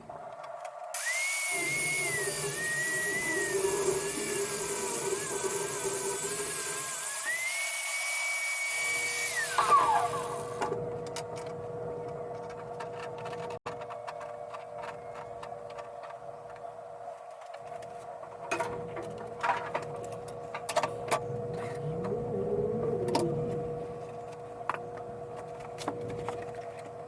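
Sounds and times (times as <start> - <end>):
power tool motor running: 1.0 - 10.8
steady hum: 1.0 - 27.0.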